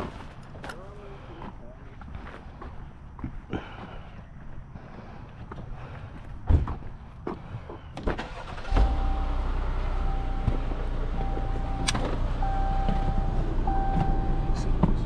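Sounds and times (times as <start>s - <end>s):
vehicle engine starting and idling: 8.0s - 15.0s.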